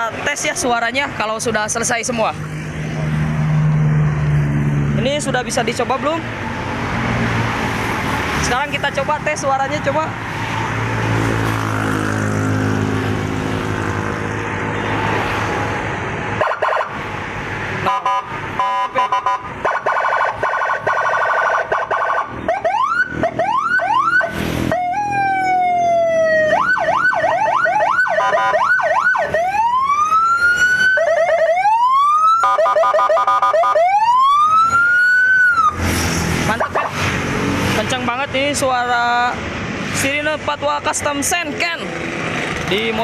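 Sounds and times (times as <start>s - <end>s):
siren horn blast: 16.4s - 17.0s, 17.8s - 37.1s
police siren wailing and yelping: 16.4s - 17.1s, 17.8s - 35.9s.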